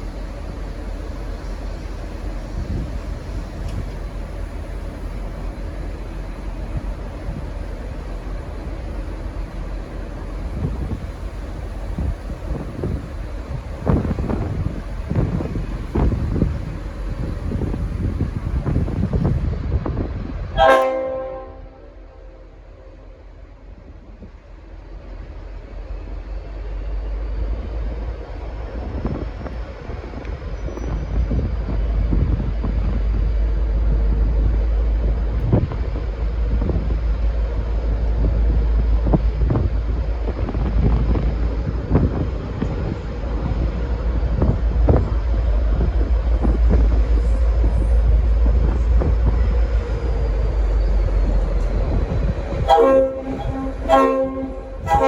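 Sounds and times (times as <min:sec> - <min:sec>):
train knocks: 0:00.0 - 0:22.5, 0:51.2 - 0:55.0
diesel locomotive engine rumble: 0:00.0 - 0:55.0
locomotive horn blasts: 0:20.6 - 0:22.5, 0:52.7 - 0:55.0.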